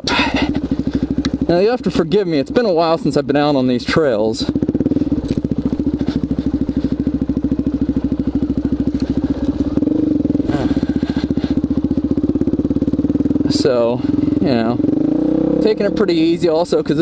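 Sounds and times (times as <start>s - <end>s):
single-cylinder engine running slowly: 0.0s - 17.0s.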